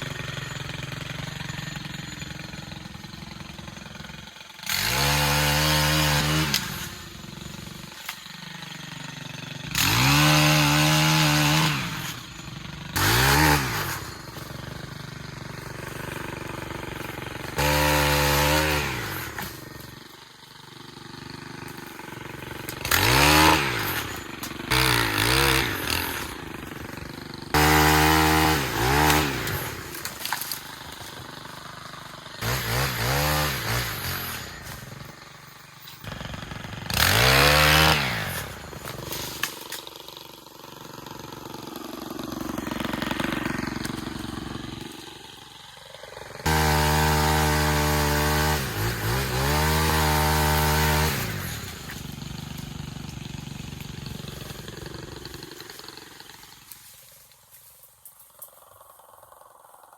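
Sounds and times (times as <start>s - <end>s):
pole saw revving: 0.0s - 57.2s.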